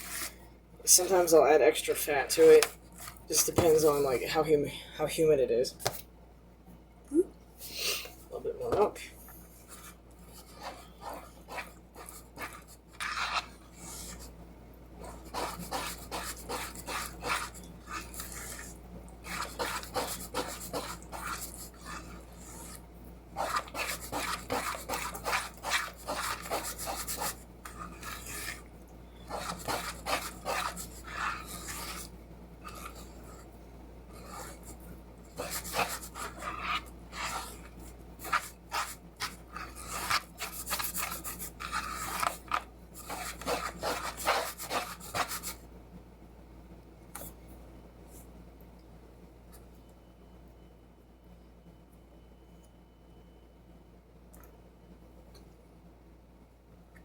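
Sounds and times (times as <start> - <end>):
spoon stirring thick batter: 0.0 - 0.4, 8.2 - 45.6.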